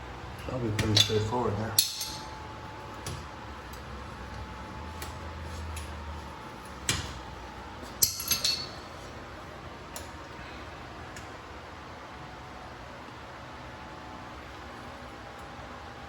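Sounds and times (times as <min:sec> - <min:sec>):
metal tools clinking: 0:08.0 - 0:08.8.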